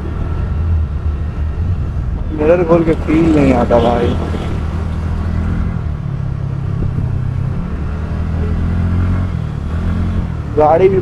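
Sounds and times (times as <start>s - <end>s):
scooter engine running: 2.3s - 6.0s.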